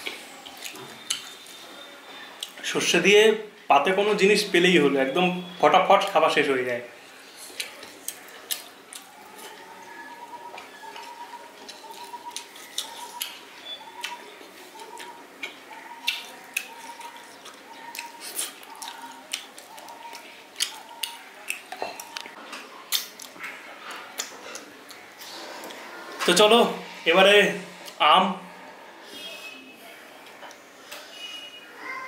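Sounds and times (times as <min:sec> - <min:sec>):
wet chewing: 0:07.3 - 0:25.8.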